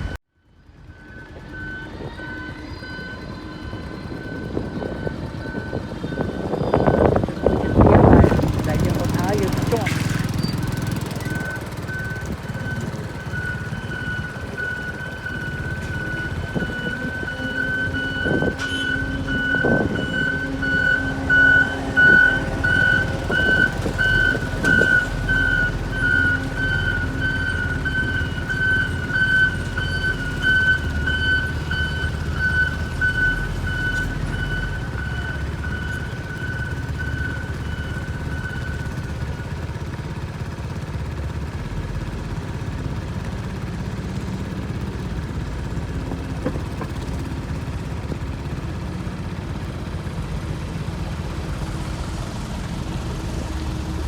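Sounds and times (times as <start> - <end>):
heavy machinery engines running: 0.0 - 54.0
high-pitched electronic warning tone: 0.8 - 38.9.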